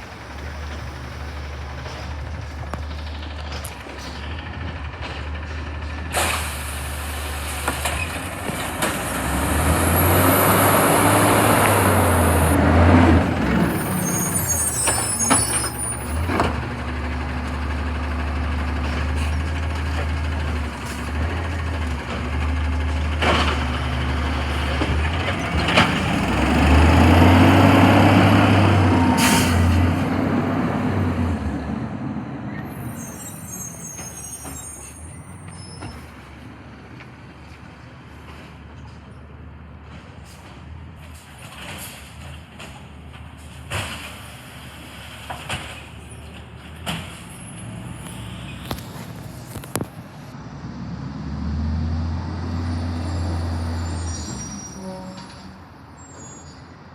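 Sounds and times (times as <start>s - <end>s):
garbage truck engine running: 0.0s - 50.4s
air brakes hissing and knocking: 5.5s - 16.6s, 28.9s - 30.1s, 32.5s - 36.3s.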